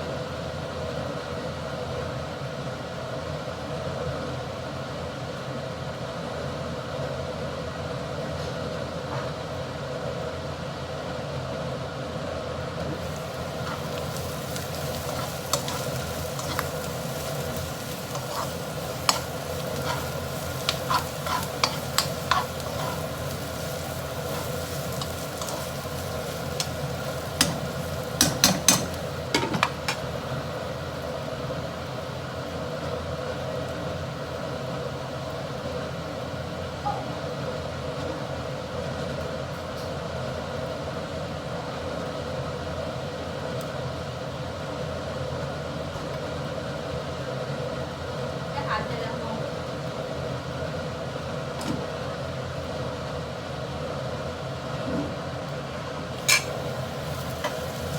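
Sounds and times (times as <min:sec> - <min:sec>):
constant hum: 0:12.8 - 0:34.5, 0:56.2 - 0:57.9
noodles sizzling in a pan: 0:12.9 - 0:36.8, 0:56.1 - 0:57.9
utensil scraping against pan: 0:13.0 - 0:30.2, 0:56.2 - 0:57.9.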